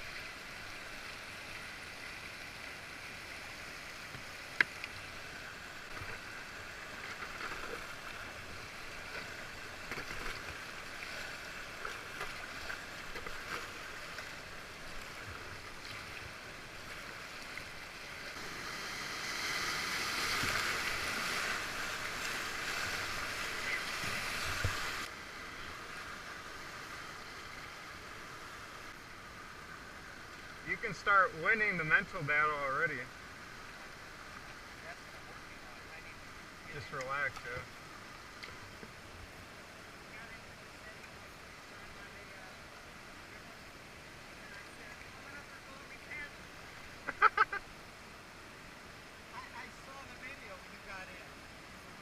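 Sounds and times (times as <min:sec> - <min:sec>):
river water rushing and splashing: 0:00.0 - 0:52.0.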